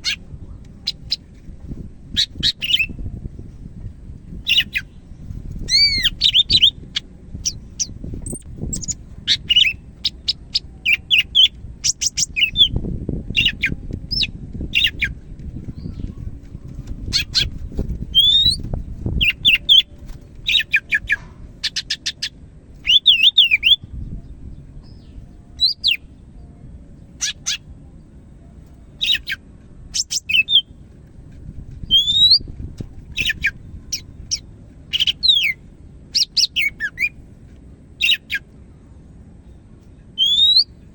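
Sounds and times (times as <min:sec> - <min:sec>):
low steady background rumble: 0:00.0 - 0:40.9
bird singing chirps and whistles: 0:02.2 - 0:03.0, 0:04.4 - 0:04.9, 0:05.7 - 0:06.8, 0:07.4 - 0:15.2, 0:18.1 - 0:18.6, 0:19.2 - 0:23.8, 0:24.9 - 0:26.1, 0:29.0 - 0:30.7, 0:31.8 - 0:32.5, 0:33.2 - 0:35.6, 0:36.2 - 0:37.2, 0:38.0 - 0:38.4, 0:40.2 - 0:40.8.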